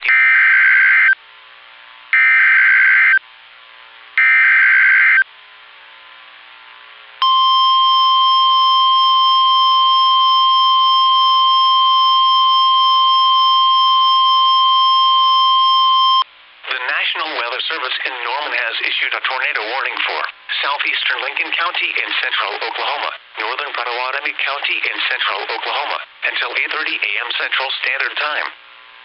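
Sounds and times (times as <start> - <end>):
steady single-pitch attention tone: 7.2 - 16.2.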